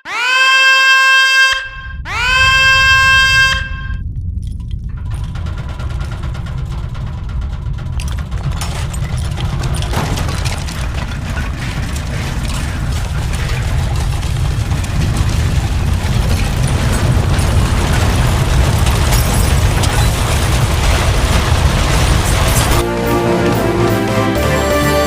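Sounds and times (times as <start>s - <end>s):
earthquake rumble: 1.6s - 24.4s
crackling and rattling: 1.9s - 25.0s.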